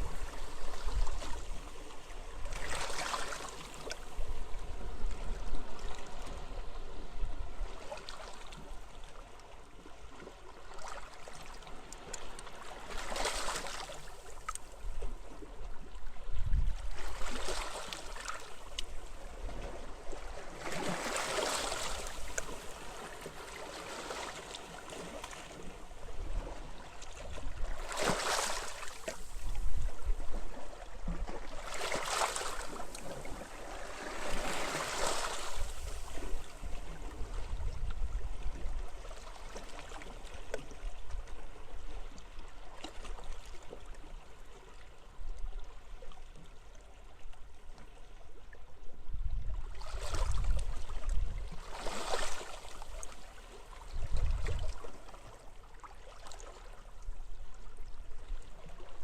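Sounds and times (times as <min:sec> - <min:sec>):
wind rumble on microphone: 0:00.0 - 0:02.9, 0:14.8 - 0:17.6, 0:25.9 - 0:27.9, 0:29.2 - 0:31.7, 0:32.6 - 0:39.6, 0:48.7 - 0:53.1, 0:53.8 - 0:55.1
waves washing onto beach: 0:31.6 - 0:36.6.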